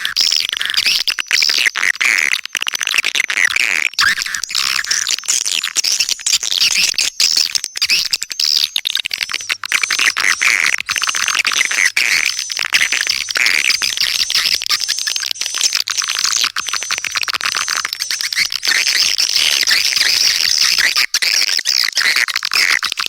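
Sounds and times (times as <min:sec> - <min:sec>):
swiftlets twittering and chirping: 0:00.0 - 0:23.0.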